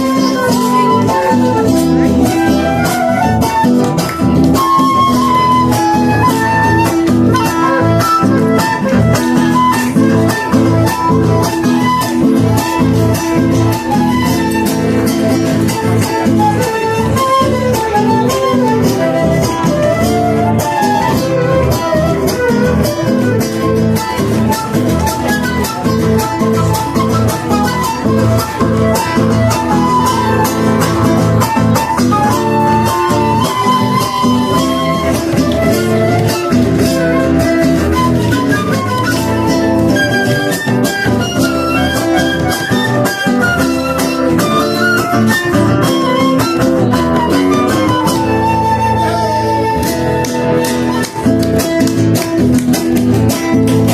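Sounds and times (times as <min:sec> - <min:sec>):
acoustic guitars strumming: 0:00.0 - 0:53.9.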